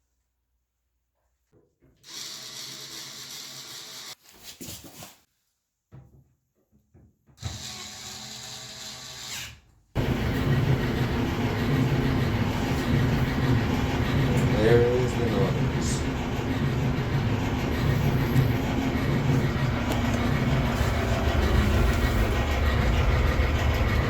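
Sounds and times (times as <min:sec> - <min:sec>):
dryer drum turning on rollers: 0:10.0 - 0:24.0
power driver running: 0:10.0 - 0:24.0.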